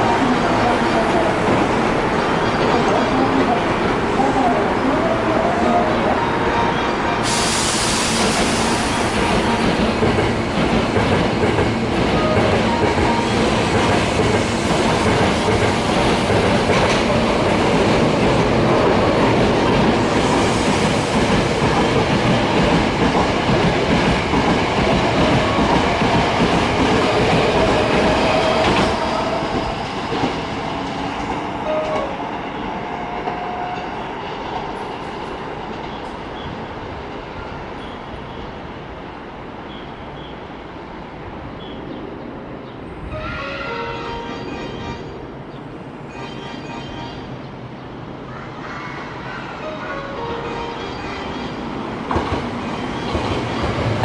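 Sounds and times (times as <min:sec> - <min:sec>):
electric train wheels clattering: 0:07.2 - 0:32.0.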